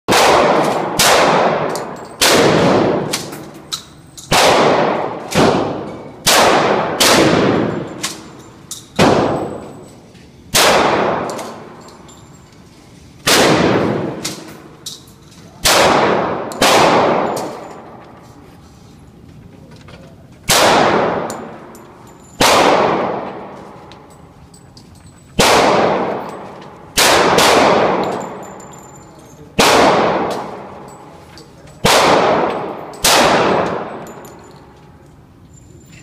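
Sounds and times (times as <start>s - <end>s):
pistol shots with ringing echo: 0.1s - 9.9s, 10.5s - 12.1s, 13.2s - 14.8s, 15.6s - 18.0s, 20.5s - 24.2s, 25.3s - 31.2s, 31.8s - 34.8s.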